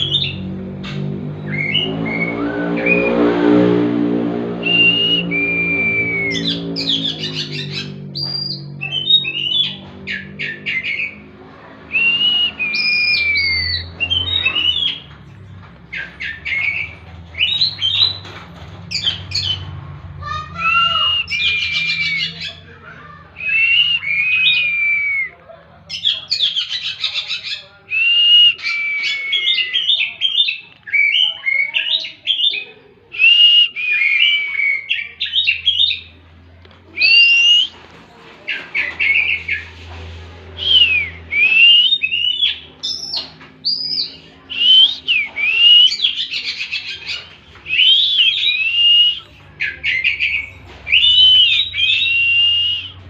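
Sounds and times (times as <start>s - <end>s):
magpie-robin singing: 1.4s - 3.0s, 4.7s - 11.3s, 11.9s - 15.2s, 15.9s - 18.3s, 18.9s - 19.7s, 20.6s - 22.7s, 25.9s - 27.8s, 28.5s - 32.7s, 33.8s - 36.2s, 40.6s - 53.0s.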